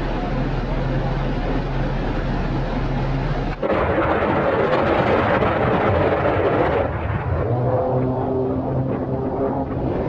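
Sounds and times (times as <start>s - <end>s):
vehicle engine hum: 0.0s - 10.0s
distant gatling cannon firing: 3.6s - 7.5s.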